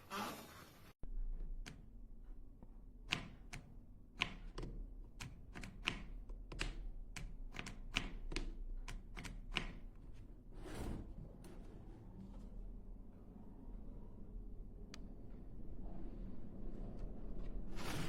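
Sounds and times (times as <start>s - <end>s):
low steady hum: 9.8s - 17.9s.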